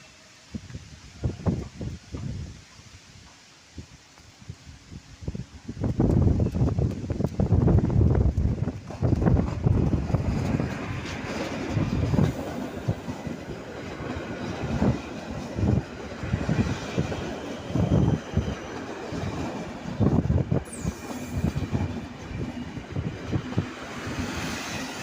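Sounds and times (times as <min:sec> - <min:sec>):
train wheels clattering over rail joints: 0:08.2 - 0:25.0.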